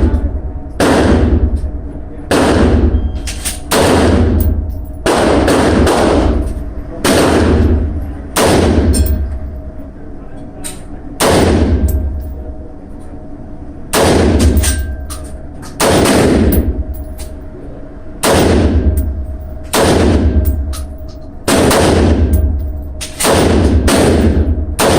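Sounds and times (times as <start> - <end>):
rifle shots with echo: 0.8 - 1.5, 2.3 - 3.0, 3.7 - 9.3, 11.2 - 12.4, 13.9 - 14.9, 15.8 - 17.0, 18.2 - 20.9, 21.5 - 24.9.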